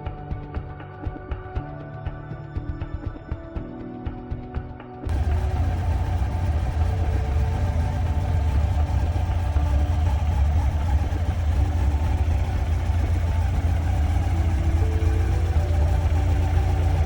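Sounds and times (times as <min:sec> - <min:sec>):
motorcycle engine idling: 0:05.1 - 0:17.0.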